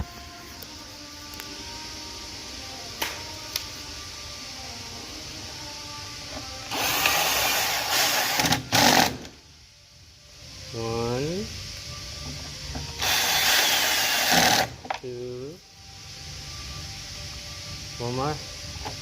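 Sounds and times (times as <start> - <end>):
faint background music: 0.0 - 19.0
power drill driving screw: 6.7 - 9.3, 13.0 - 14.8.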